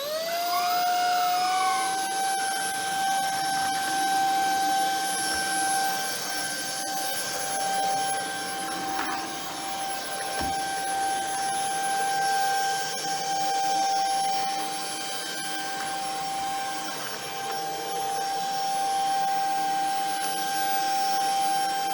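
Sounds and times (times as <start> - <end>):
vacuum cleaner motor whine: 0.0 - 21.9
vacuum knocking: 10.3 - 10.8.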